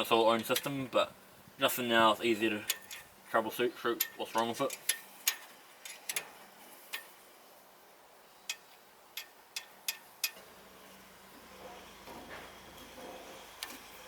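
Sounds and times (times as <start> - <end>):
light metallic clicks and taps: 4.0 - 7.2, 8.4 - 10.4.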